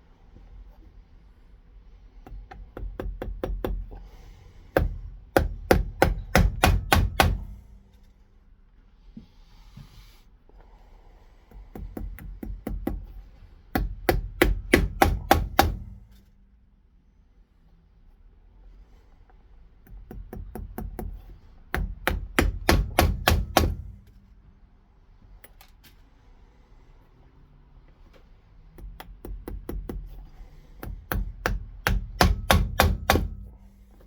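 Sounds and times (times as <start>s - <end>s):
hammer striking a boot: 4.8s - 7.6s, 13.8s - 16.1s, 21.8s - 24.2s, 30.8s - 33.6s.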